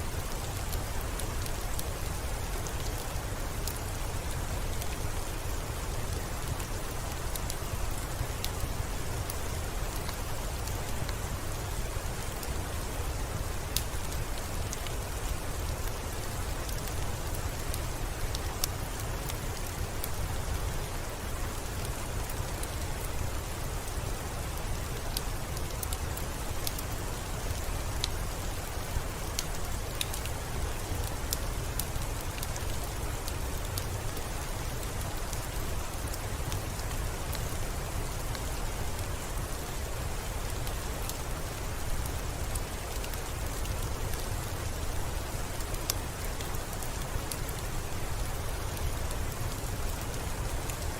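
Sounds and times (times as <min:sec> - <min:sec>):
soft rain: 0:00.0 - 0:50.9
wood fire crackling and popping: 0:24.9 - 0:40.0.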